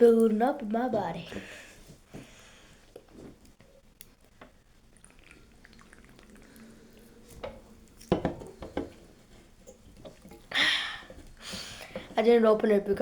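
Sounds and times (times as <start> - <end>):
person gulping a drink: 4.7 - 8.0.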